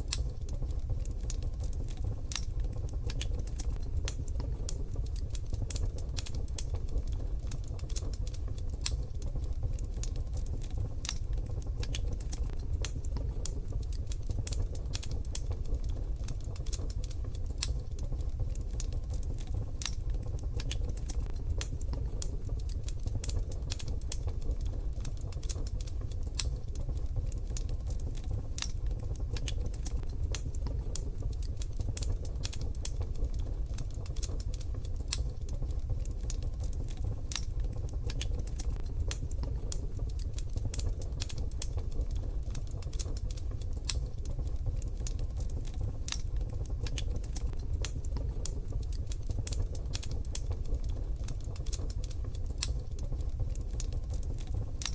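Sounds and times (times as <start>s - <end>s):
wood fire crackling in a stove: 0.0s - 54.9s.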